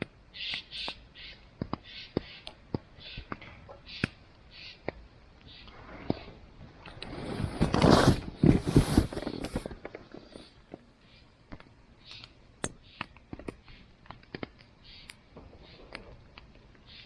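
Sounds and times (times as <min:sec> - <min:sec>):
soft hisses: 0:05.5 - 0:11.3.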